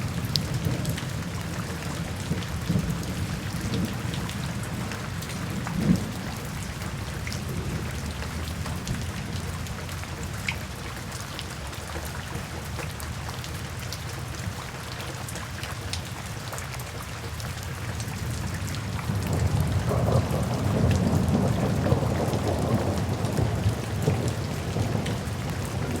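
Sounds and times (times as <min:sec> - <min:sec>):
low rumble of thunder: 0:00.0 - 0:10.4, 0:18.0 - 0:26.0
steady rain: 0:00.0 - 0:26.0.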